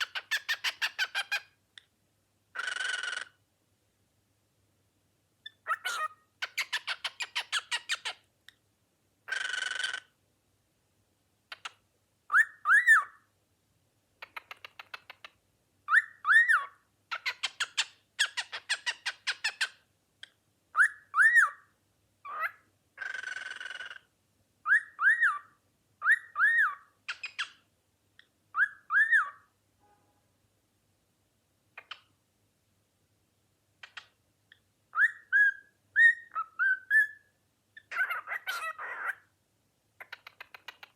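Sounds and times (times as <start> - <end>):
cockatiel screeching: 0.0 - 1.5, 2.6 - 3.3, 5.6 - 8.2, 9.3 - 10.1, 22.3 - 24.0, 24.7 - 27.5, 28.6 - 29.4, 37.8 - 39.3
cockatiel chirping: 0.0 - 1.9, 2.6 - 3.4, 5.4 - 8.2, 9.3 - 10.1, 11.5 - 13.2, 14.2 - 19.8, 20.7 - 27.6, 28.2 - 29.5, 31.8 - 32.1, 33.8 - 39.3, 40.0 - 40.9
cockatiel whistling: 12.3 - 13.2, 15.9 - 16.7, 20.8 - 21.6, 24.6 - 27.5, 28.5 - 29.4, 34.9 - 37.3.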